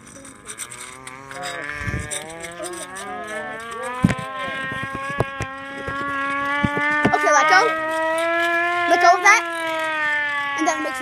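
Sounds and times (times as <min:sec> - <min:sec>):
hand-cranked siren wailing: 0:00.0 - 0:11.0
sharp knocks: 0:03.9 - 0:08.8.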